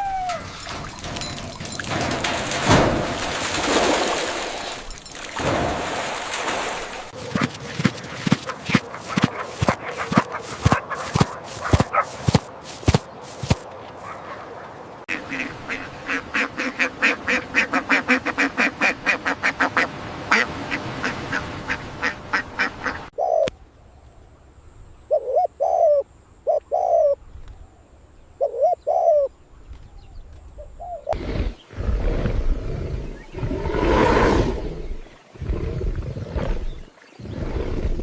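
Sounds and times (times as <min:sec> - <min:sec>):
ducks quacking: 0:08.4 - 0:12.4, 0:15.1 - 0:23.1.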